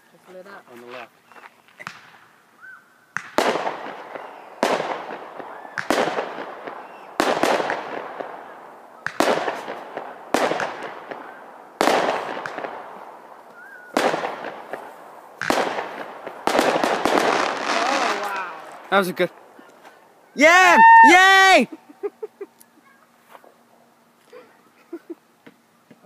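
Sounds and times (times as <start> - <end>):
firework shells bursting: 3.1 - 19.6.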